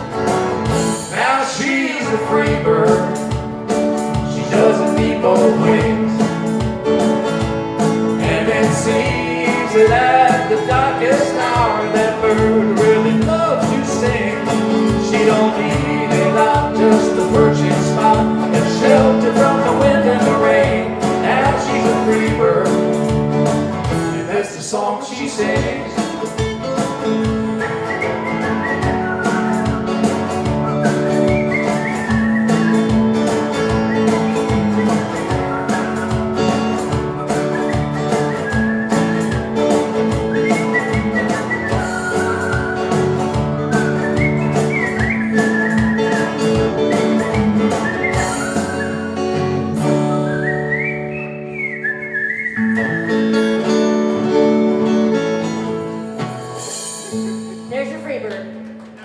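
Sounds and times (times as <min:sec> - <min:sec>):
steady drum beat: 0:00.0 - 0:01.2, 0:02.2 - 0:24.3, 0:25.5 - 0:50.8
strummed guitar chords: 0:00.0 - 0:59.0
high lead melody: 0:25.8 - 0:50.3.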